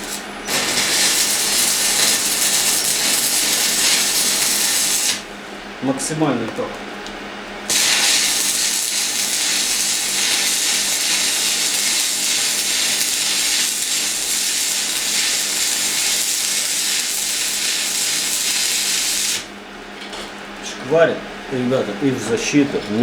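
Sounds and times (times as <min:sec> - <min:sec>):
welding arc sizzling: 0:00.0 - 0:05.4, 0:07.7 - 0:19.6.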